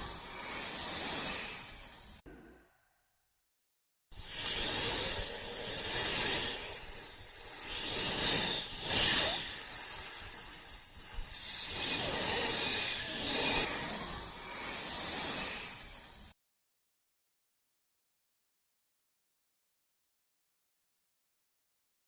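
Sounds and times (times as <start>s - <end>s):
snake hissing: 0.0s - 2.2s, 4.1s - 16.4s.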